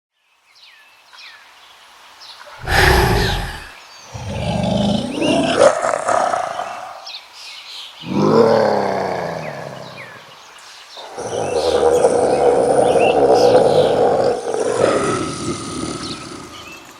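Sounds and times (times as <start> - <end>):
faint chirps: 2.6 - 5.6
deep beast roars: 2.6 - 6.6, 8.0 - 10.1, 11.0 - 16.8.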